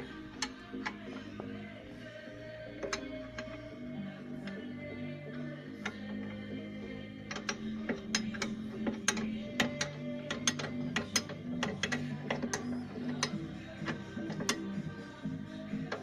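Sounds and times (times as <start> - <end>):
background music: 0.0 - 16.0
ratchet wrench clicking: 5.8 - 6.6, 7.2 - 14.8.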